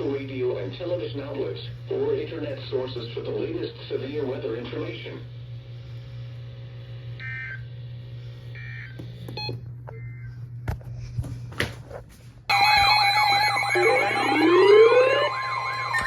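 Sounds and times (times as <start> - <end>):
steady hum: 9.6 - 16.0
two-tone digital data bursts: 12.5 - 16.0
wavering siren-like alarm: 12.5 - 16.0.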